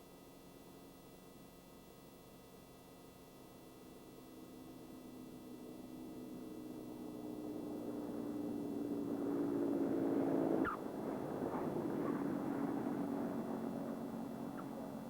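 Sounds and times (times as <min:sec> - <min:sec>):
propeller aircraft passing by: 0:04.4 - 0:15.0.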